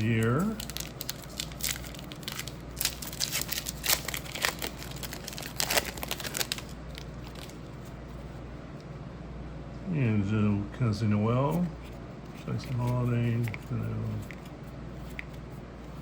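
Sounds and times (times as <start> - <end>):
cards and packaging rustling: 0.0 - 8.0, 11.8 - 16.0.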